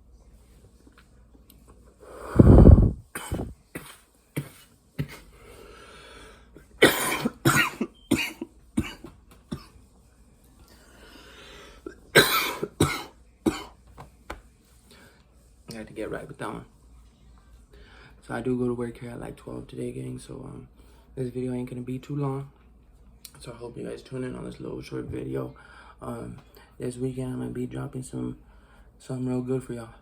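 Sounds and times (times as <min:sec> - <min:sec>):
breathy exhaling: 0:02.0 - 0:03.5
man coughing hard: 0:02.5 - 0:05.3, 0:06.8 - 0:09.7, 0:12.1 - 0:13.8.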